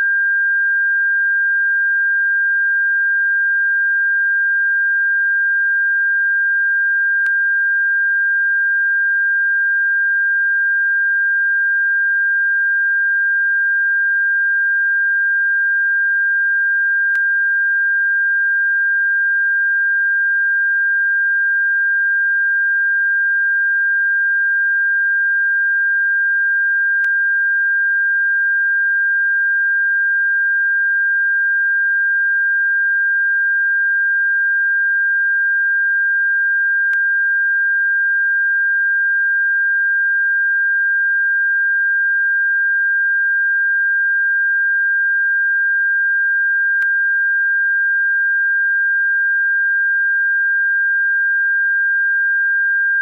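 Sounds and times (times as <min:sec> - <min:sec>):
high-pitched electronic sine tone: 0:00.0 - 0:53.0
faint click: 0:36.9 - 0:37.1, 0:46.8 - 0:47.0.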